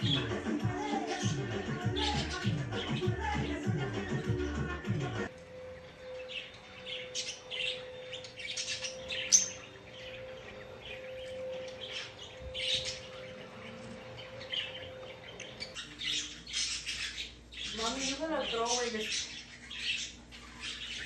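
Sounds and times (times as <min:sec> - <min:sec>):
lovebirds chirping: 0:00.0 - 0:21.0.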